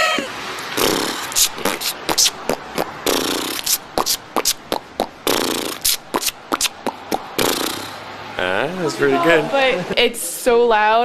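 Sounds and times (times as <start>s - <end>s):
person beatboxing: 0.8s - 8.0s.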